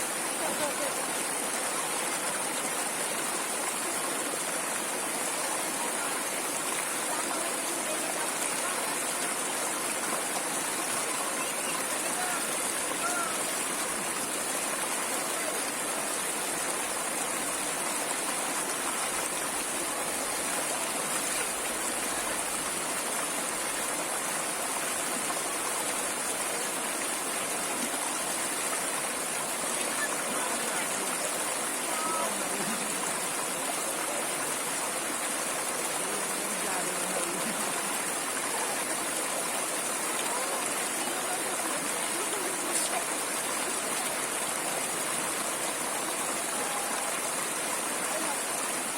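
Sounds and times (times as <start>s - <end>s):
stream rushing and burbling: 0.0s - 48.9s.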